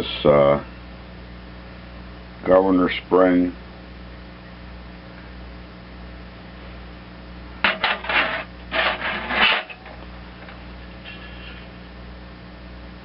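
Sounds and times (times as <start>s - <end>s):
metal scraping and rubbing: 7.6s - 11.7s.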